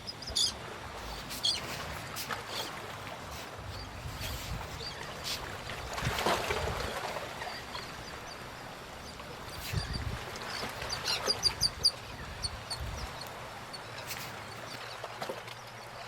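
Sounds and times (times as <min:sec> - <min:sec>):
outdoor background noise: 0:00.0 - 0:16.0
small bird chirping: 0:09.0 - 0:14.8.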